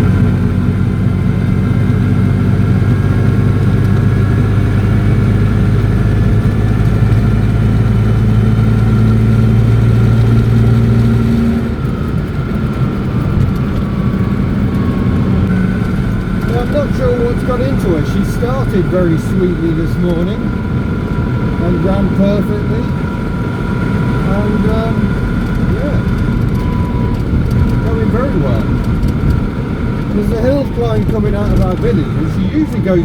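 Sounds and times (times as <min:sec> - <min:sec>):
high transmission whine: 0:00.0 - 0:33.0
small engine drone: 0:00.0 - 0:33.0.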